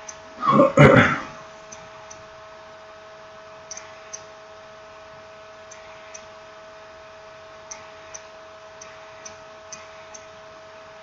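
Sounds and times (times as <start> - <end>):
electrical hum: 0.0 - 11.0
small sharp clicks: 3.7 - 4.3, 7.7 - 10.3.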